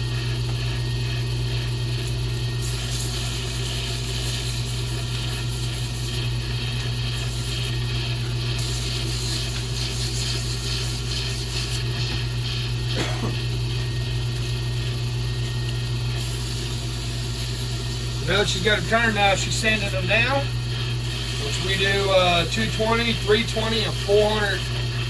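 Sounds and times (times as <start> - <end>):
lathe motor hum: 0.0 - 25.0
tool scraping spinning wood: 16.1 - 25.0.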